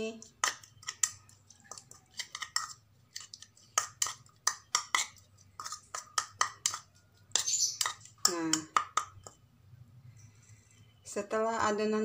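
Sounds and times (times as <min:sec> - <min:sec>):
spoon clinking against bowl: 0:00.3 - 0:09.4.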